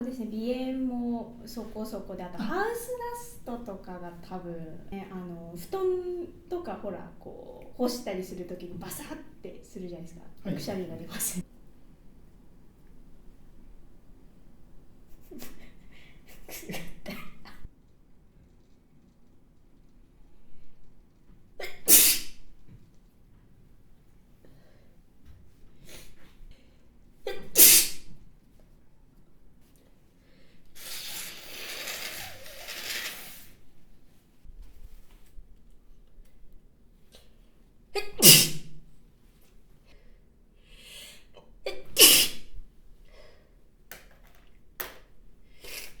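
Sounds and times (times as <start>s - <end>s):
woman sneezing: 21.6s - 22.4s, 27.3s - 28.1s, 38.0s - 38.8s, 41.7s - 42.5s
sniffs and breaths: 30.2s - 33.4s.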